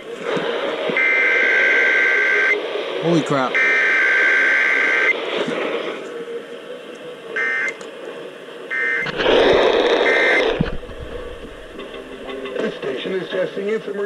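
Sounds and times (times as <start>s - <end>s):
radio hiss and static: 0.0s - 14.0s
buzzing digital data tones: 8.7s - 12.6s.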